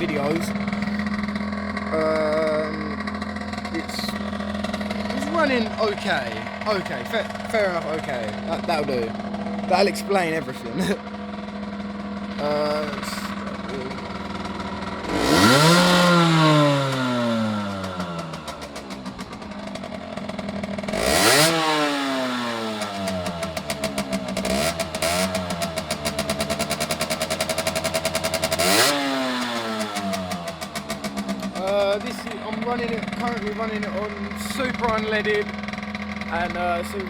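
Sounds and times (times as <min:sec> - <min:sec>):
person talking: 0:00.0 - 0:00.6, 0:01.9 - 0:03.0, 0:03.6 - 0:04.2, 0:05.1 - 0:11.0, 0:12.4 - 0:14.0, 0:31.6 - 0:35.5, 0:36.3 - 0:37.0
two-stroke engine revving: 0:00.0 - 0:37.0.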